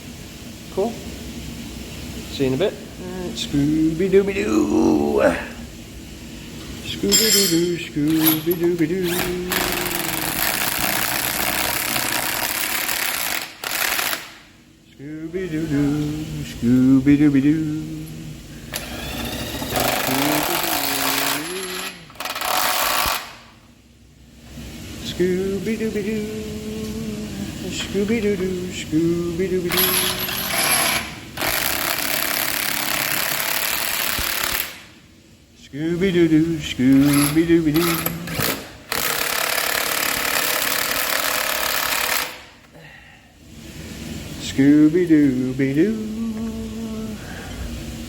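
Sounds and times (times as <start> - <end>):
man humming a tune: 3.0 - 5.7, 19.7 - 22.1, 25.4 - 29.8, 45.2 - 47.4
handheld power tool running: 8.1 - 14.3, 18.7 - 23.4, 29.7 - 34.8, 37.0 - 42.4.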